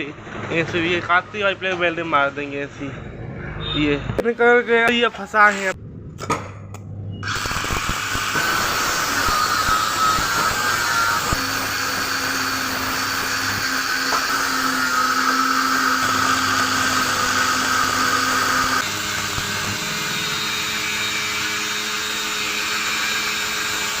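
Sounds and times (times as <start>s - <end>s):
power tool whining hum: 7.2s - 24.0s.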